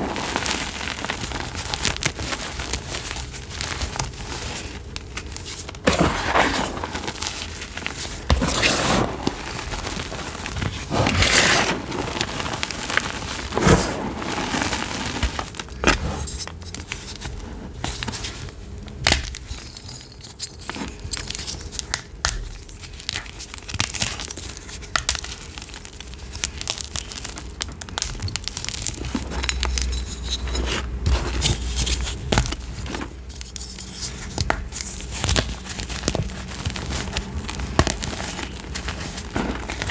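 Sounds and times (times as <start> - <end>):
chalk being crushed: 0.0 - 18.4, 19.2 - 39.9.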